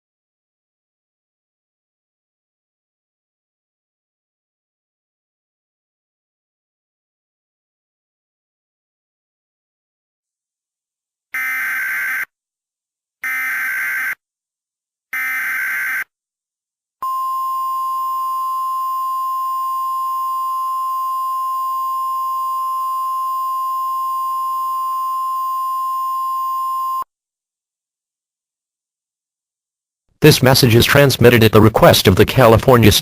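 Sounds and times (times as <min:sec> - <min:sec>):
steady attention tone: 0:17.0 - 0:27.1.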